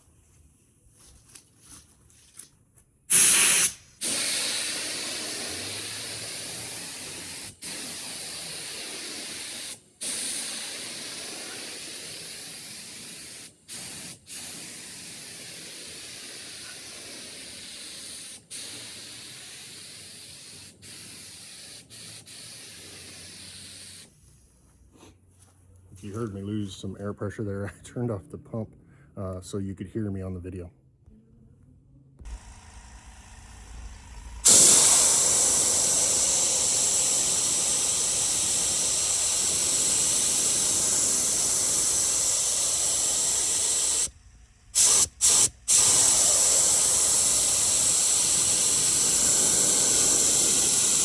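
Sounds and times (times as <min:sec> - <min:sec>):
paint spray gun hissing: 0:03.1 - 0:24.1, 0:32.3 - 0:44.2, 0:44.8 - 0:51.0.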